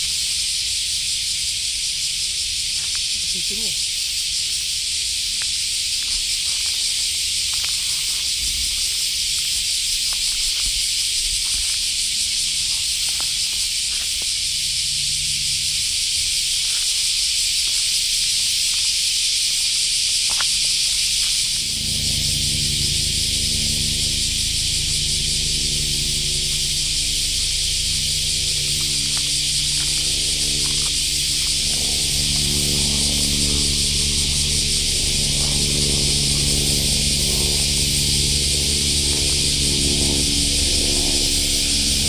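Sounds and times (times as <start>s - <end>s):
insects shrilling: 0.0s - 42.0s
footsteps and twigs in undergrowth: 5.4s - 14.6s, 26.5s - 34.4s
low steady hum: 21.0s - 42.0s.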